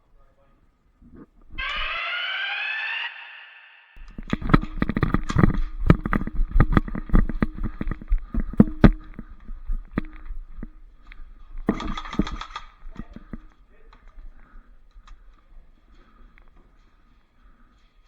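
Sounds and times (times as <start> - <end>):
gear clattering: 4.0 - 13.5
running footsteps: 4.0 - 18.0.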